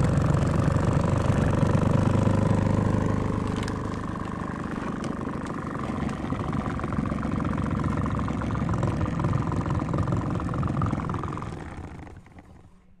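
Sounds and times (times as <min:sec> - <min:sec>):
washing machine motor humming: 0:00.0 - 0:12.1.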